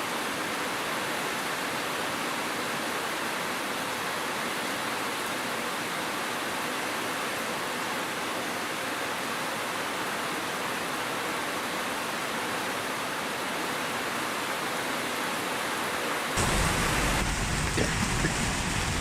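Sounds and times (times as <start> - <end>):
hiss of falling water: 15.6 - 19.0
deep rumble: 16.4 - 19.0.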